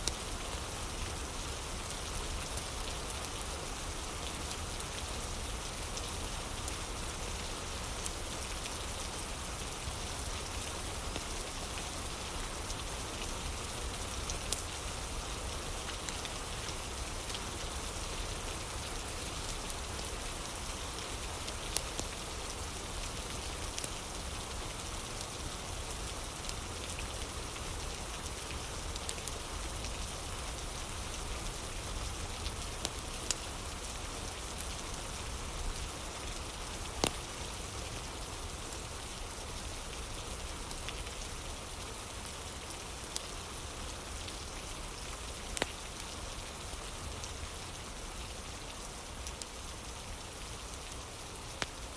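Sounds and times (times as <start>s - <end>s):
rain falling: 0.0s - 51.9s
fireplace crackling: 45.5s - 45.7s.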